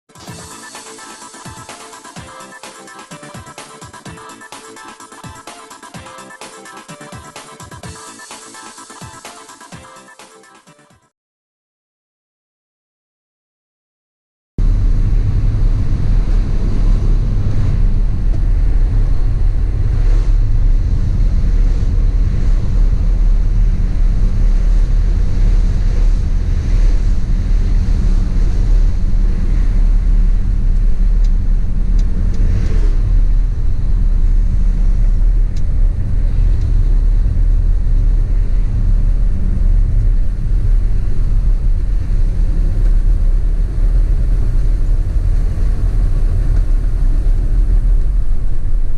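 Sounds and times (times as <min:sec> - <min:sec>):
vehicle engine and road rumble: 0:14.6 - 0:48.9
wind noise: 0:14.6 - 0:48.9.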